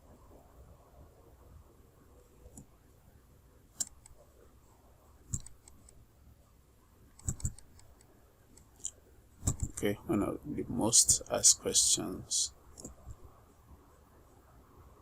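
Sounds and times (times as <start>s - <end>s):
faint room noise: 0.0s - 15.0s
computer mouse clicks: 3.8s - 4.2s, 5.3s - 6.0s, 7.2s - 9.8s, 12.7s - 13.2s.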